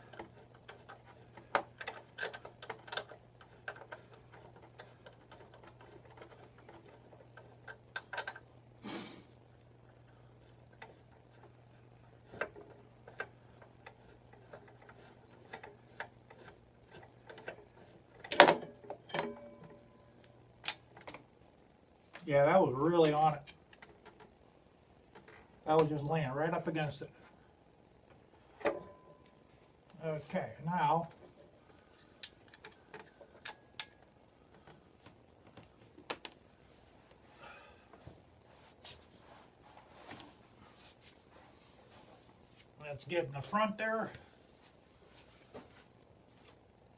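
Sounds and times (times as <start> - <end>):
metal tools clicking and tapping: 0.0 - 8.5, 17.2 - 19.9, 32.2 - 34.1
metallic clatter ringing: 18.4 - 20.0, 28.6 - 29.3.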